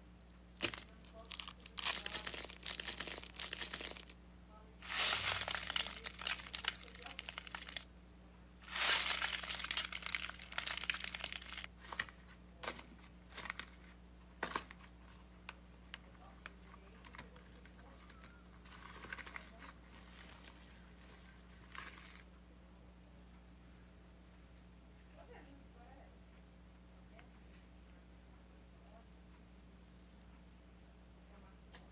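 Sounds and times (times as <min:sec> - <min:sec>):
slime crackling and popping: 0:00.6 - 0:04.2, 0:04.8 - 0:07.8, 0:08.6 - 0:11.7
slime squishing: 0:00.6 - 0:04.2, 0:04.8 - 0:07.8, 0:08.6 - 0:11.7.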